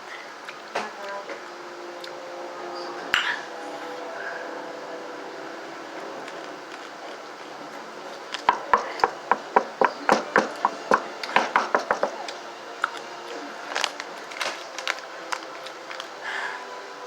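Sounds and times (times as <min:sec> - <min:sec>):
crunching chips being chewed: 0:12.8 - 0:16.2.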